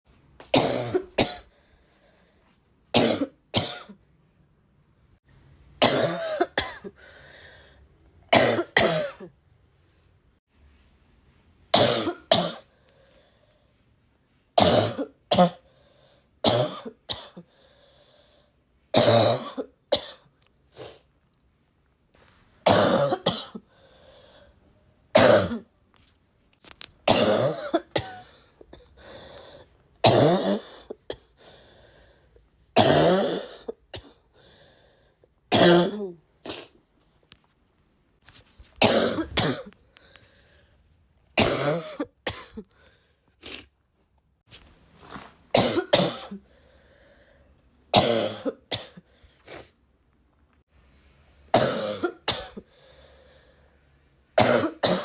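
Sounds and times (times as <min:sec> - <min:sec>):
person coughing: 0:00.5 - 0:01.5, 0:03.0 - 0:04.0, 0:05.8 - 0:07.0, 0:08.3 - 0:09.3, 0:11.8 - 0:12.7, 0:14.6 - 0:15.6, 0:22.7 - 0:23.6, 0:25.2 - 0:25.7, 0:27.1 - 0:28.9, 0:30.0 - 0:31.3, 0:32.8 - 0:34.2, 0:35.5 - 0:36.8, 0:38.8 - 0:39.8, 0:41.4 - 0:42.7, 0:45.5 - 0:46.4, 0:47.9 - 0:49.1, 0:51.6 - 0:52.7, 0:54.4 - 0:55.0.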